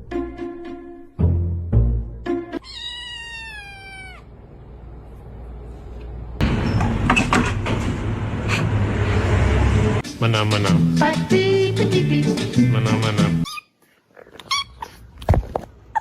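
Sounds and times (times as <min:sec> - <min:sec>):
cat meowing: 0:02.6 - 0:04.3
loud music with steady bass: 0:10.0 - 0:13.4.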